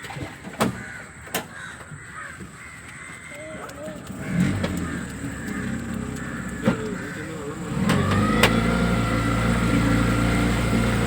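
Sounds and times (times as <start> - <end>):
boat engine revving: 3.6 - 11.0.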